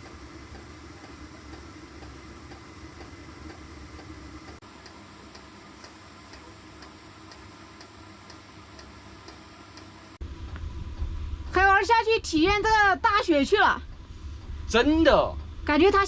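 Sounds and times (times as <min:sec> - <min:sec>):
steady ticking: 0:00.0 - 0:09.9
low steady hum: 0:00.0 - 0:16.0.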